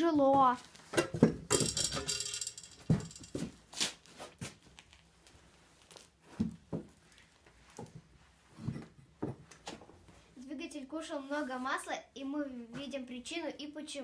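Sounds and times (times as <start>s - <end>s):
metallic jingling rattle: 1.5s - 3.4s.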